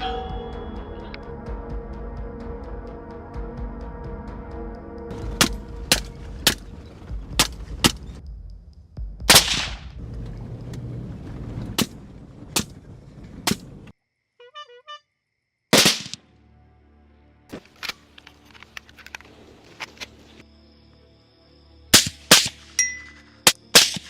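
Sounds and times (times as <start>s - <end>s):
dark background music: 0.0s - 10.6s, 16.2s - 24.0s
gunshots: 5.1s - 6.7s, 9.3s - 10.0s, 15.7s - 16.2s, 22.0s - 22.7s, 23.5s - 24.0s.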